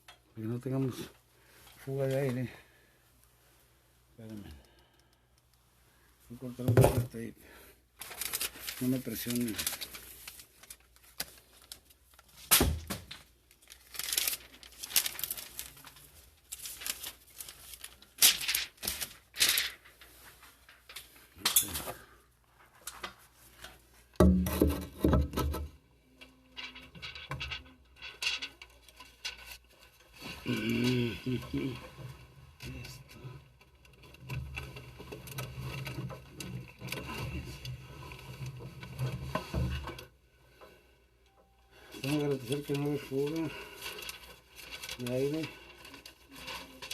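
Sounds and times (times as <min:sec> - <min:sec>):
tape pulled off roll and torn: 0:08.0 - 0:20.0.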